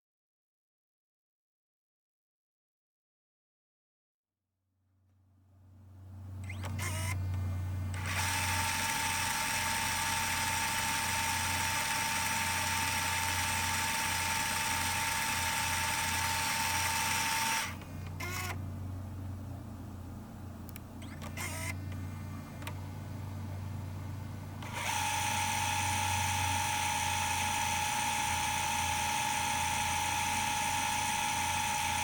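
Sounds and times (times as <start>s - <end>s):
steady low hum: 5.6s - 16.2s, 16.8s - 31.7s
tape machine winding whine: 6.4s - 18.6s, 20.6s - 23.0s, 24.6s - 32.0s
tape transport clicks and clunks: 20.6s - 22.9s.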